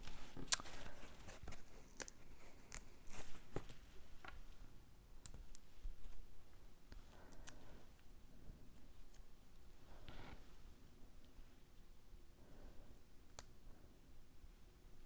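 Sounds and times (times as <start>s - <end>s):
soft paper rustles: 0.0s - 4.6s.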